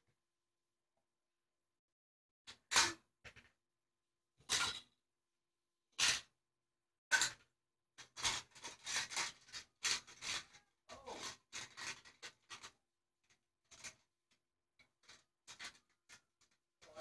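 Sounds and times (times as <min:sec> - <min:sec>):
toy cars clattering together: 0:02.5 - 0:03.5, 0:04.4 - 0:04.9, 0:06.0 - 0:06.3, 0:07.1 - 0:17.0.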